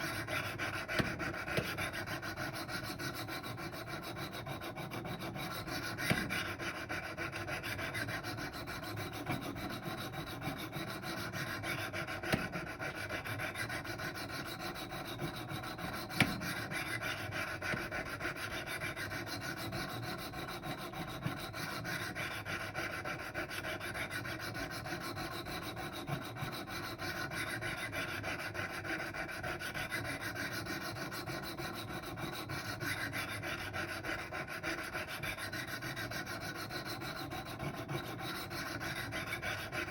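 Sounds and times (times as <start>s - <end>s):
sharpening stone scraping knife: 0.0s - 22.2s.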